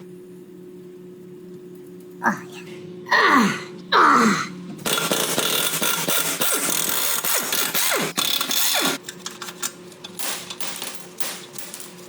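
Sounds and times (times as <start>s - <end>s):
tools and parts clattering: 6.8s - 12.0s.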